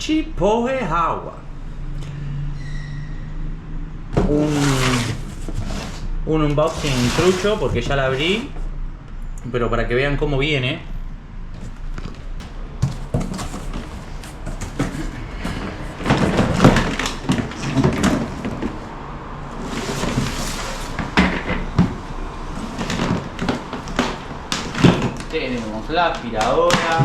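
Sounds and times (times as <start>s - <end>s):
plastic parts knocking and thumping: 12.0s - 18.8s, 19.7s - 27.0s.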